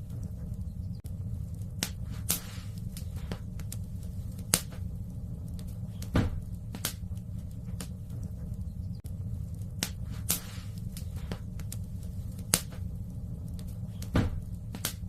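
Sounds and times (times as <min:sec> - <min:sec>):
burning logs popping: 0:00.0 - 0:15.0
fireplace fire low rumble: 0:00.0 - 0:15.0.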